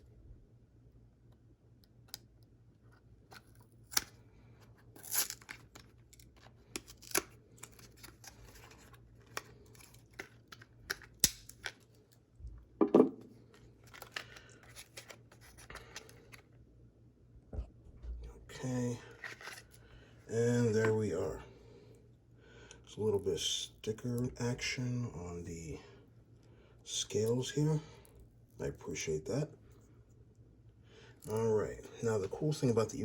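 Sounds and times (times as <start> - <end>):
packaging tearing and crinkling: 4.9 - 11.9.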